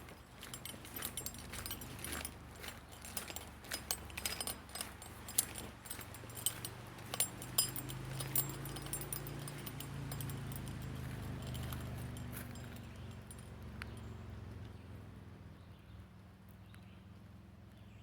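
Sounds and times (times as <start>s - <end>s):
metal gear jingling: 0.0s - 14.1s.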